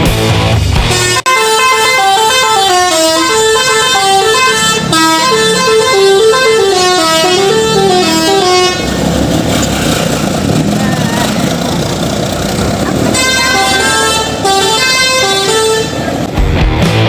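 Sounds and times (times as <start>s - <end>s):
bus horn playing a tune: 0.9s - 9.2s, 13.0s - 16.3s.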